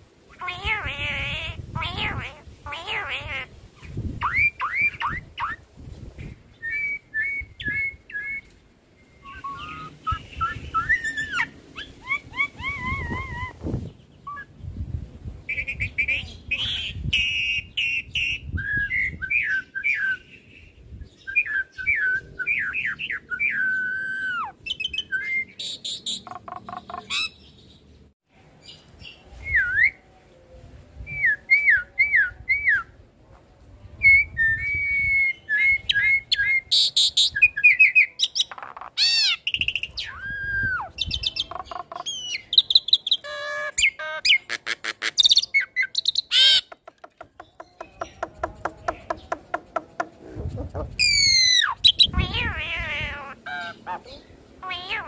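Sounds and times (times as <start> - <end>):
bird singing whistled notes: 6.5 - 14.6, 17.0 - 27.5.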